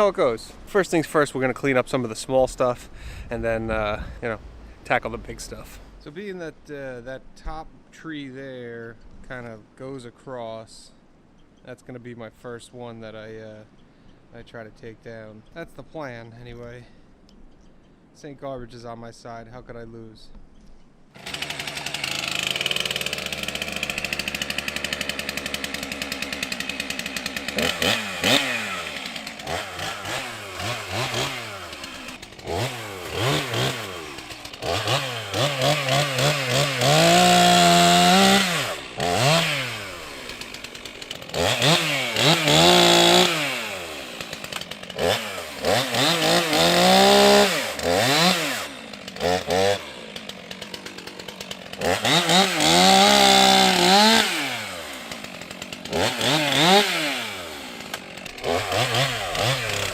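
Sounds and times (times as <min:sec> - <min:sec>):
chainsaw idling and revving: 0:21.2 - 0:59.9.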